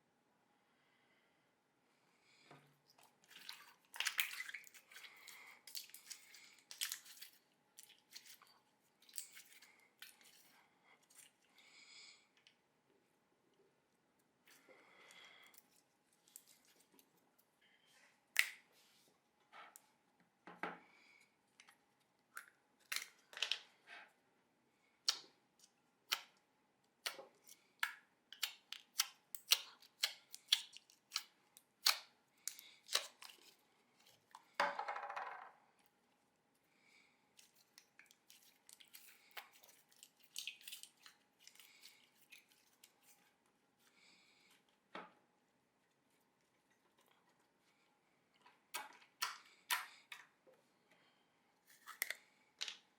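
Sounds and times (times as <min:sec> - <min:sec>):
slime squelch: 0:02.7 - 0:12.6, 0:14.4 - 0:19.1, 0:25.0 - 0:34.6, 0:35.8 - 0:44.9, 0:45.5 - 0:50.6.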